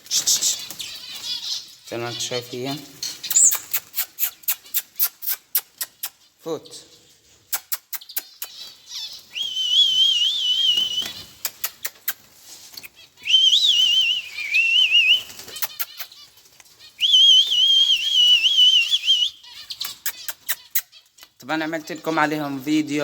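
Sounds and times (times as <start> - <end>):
person whistling warbling call: 9.4 - 11.2, 13.2 - 15.3, 17.0 - 19.4.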